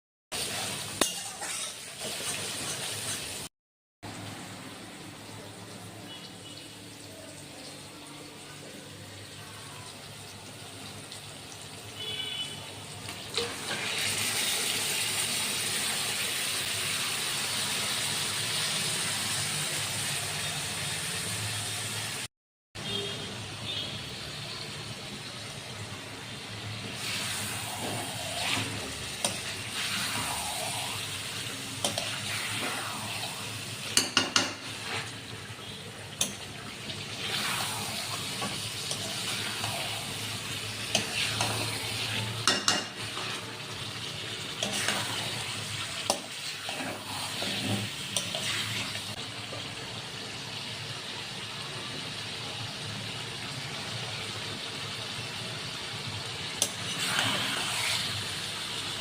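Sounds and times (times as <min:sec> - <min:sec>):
chicken sizzling in a pan: 0:00.4 - 0:03.5, 0:09.2 - 0:22.3, 0:23.7 - 0:59.0
spatula scraping a pan: 0:01.0 - 0:03.3, 0:34.5 - 0:35.2, 0:37.2 - 0:43.5, 0:44.5 - 0:48.9, 0:56.6 - 0:58.2.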